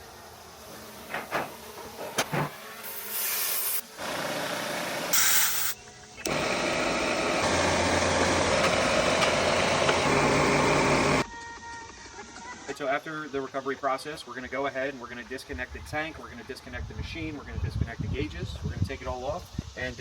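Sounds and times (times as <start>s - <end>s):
hiss and rubbing: 0.0s - 3.9s, 5.1s - 5.8s
machine running with low hum: 6.1s - 11.2s.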